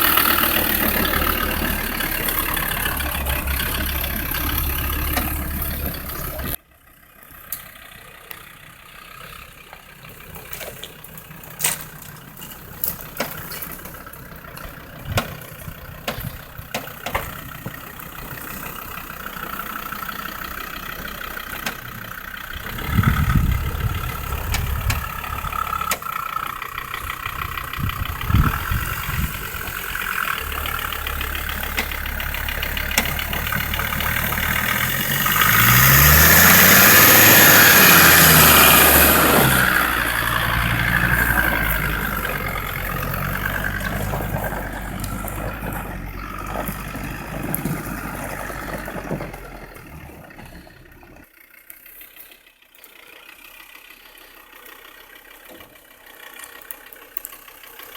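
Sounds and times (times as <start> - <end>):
engine rumble: 0.0 - 57.9
scattered knocks and clicks: 12.8 - 17.8.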